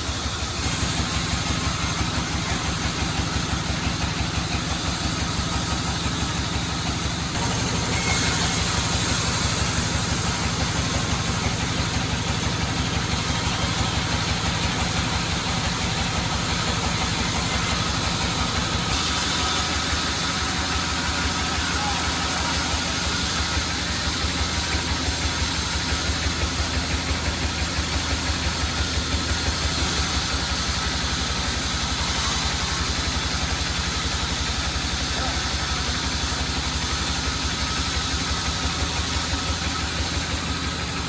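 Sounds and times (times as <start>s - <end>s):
sawmill engine running: 0.0s - 41.0s.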